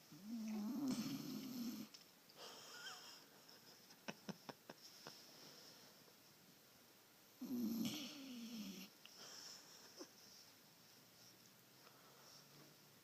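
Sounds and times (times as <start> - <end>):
loud buzzing snore: 0.6 - 1.9, 7.4 - 8.9
soft breath: 5.0 - 6.2, 9.0 - 12.9.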